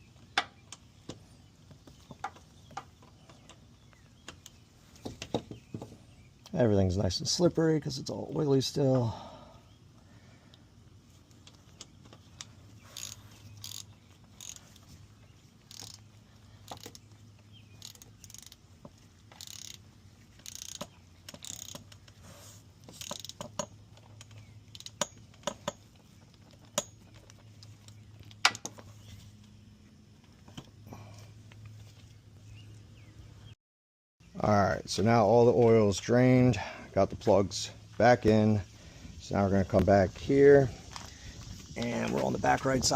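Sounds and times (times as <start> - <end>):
low steady hum: 0.0 - 33.6
ratchet wrench clicking: 12.4 - 14.9, 15.6 - 17.0, 17.8 - 18.6, 19.2 - 22.2, 23.0 - 25.8.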